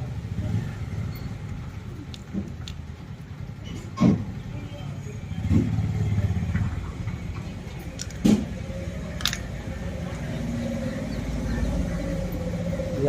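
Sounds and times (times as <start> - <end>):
vehicle engine rumbling: 0.0 - 13.0
sharp clicks: 2.0 - 2.9, 7.8 - 9.7.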